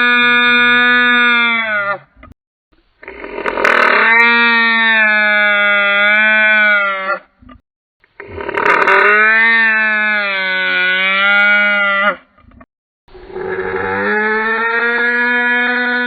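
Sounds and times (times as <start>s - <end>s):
dinosaur creature call: 3.1s - 7.3s, 8.2s - 12.3s, 13.2s - 16.0s.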